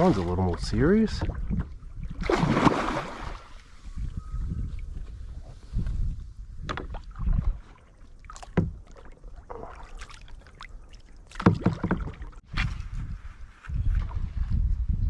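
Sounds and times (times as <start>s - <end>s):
knocks on kayak hull: 11.4s - 12.2s.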